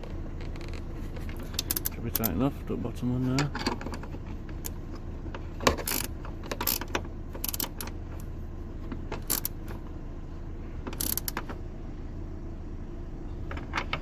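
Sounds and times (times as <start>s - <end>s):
steady low hum: 0.0s - 14.0s
socket wrench ratchet clicks: 5.8s - 7.9s, 9.2s - 9.6s, 10.9s - 11.4s.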